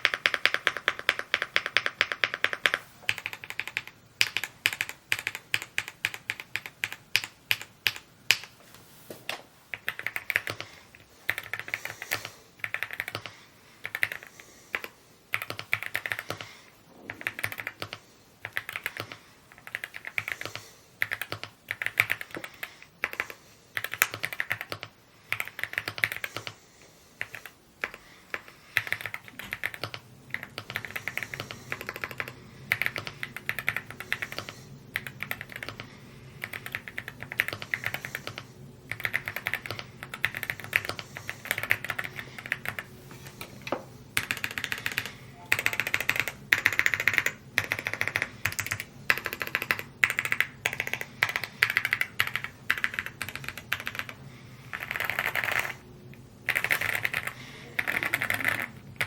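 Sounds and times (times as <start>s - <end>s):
mechanical keyboard typing: 0.0s - 8.6s, 9.7s - 16.5s, 17.1s - 26.6s, 27.2s - 55.8s, 56.4s - 59.0s.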